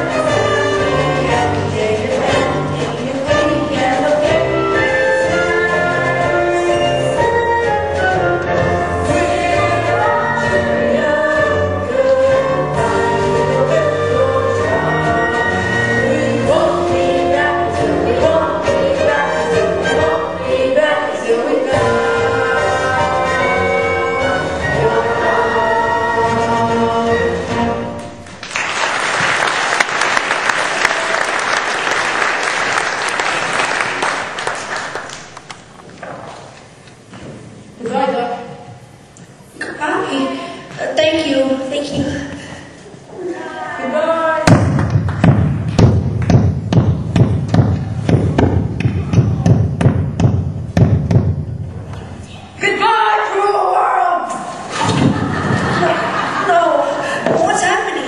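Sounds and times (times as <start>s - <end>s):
choir singing held notes: 0.0s - 28.2s
audience applauding: 28.4s - 35.7s.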